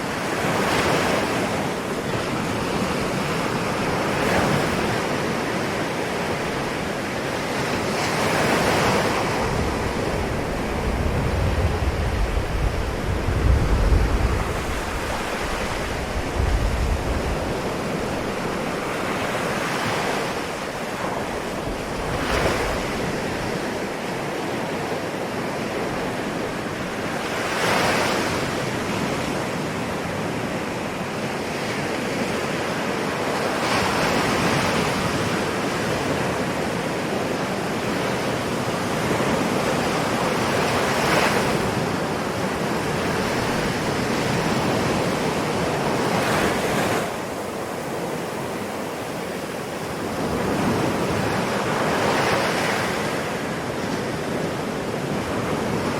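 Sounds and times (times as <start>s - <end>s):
ocean waves breaking on shore: 0.0s - 55.9s.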